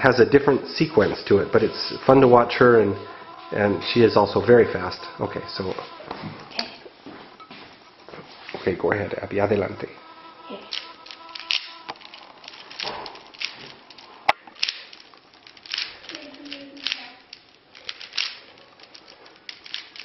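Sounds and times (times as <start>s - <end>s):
speed cube clicking: 10.7s - 20.0s.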